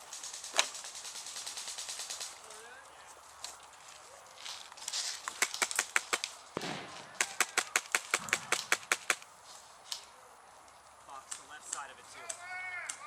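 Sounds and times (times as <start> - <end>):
airsoft guns firing: 5.3 - 9.2.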